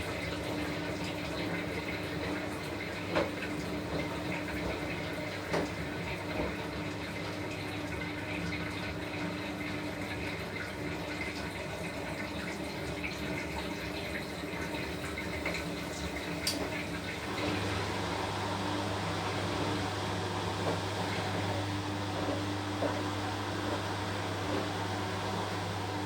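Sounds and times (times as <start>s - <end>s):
water filling washing machine: 0.0s - 26.0s
low motor hum: 16.6s - 26.0s.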